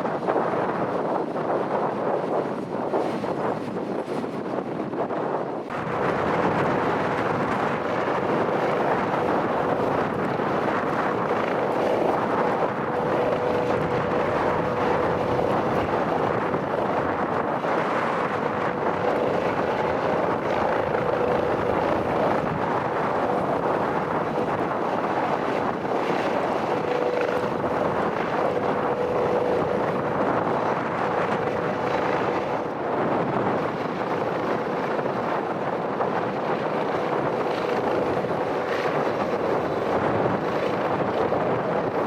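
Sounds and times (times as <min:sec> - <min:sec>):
aircraft engine drone: 0:00.0 - 0:42.0
wind buffeting microphone: 0:00.0 - 0:42.0
faint hum: 0:05.7 - 0:34.8.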